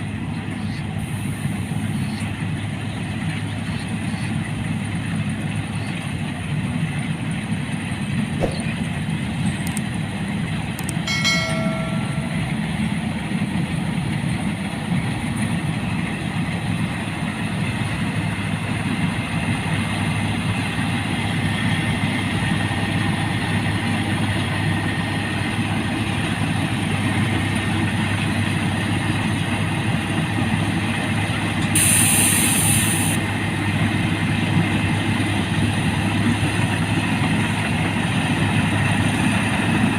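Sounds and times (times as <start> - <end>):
combine harvester droning: 0.0 - 39.9
brief hiss: 31.8 - 33.2.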